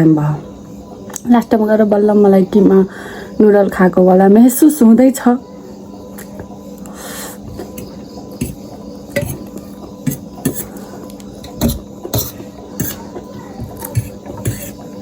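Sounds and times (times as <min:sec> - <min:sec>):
steady low hum: 0:00.0 - 0:15.0
cutlery clinking against a bowl: 0:07.6 - 0:14.8.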